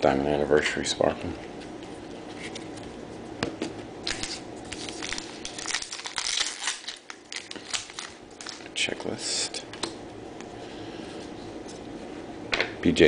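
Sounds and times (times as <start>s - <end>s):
trading cards rustling: 4.0s - 9.2s.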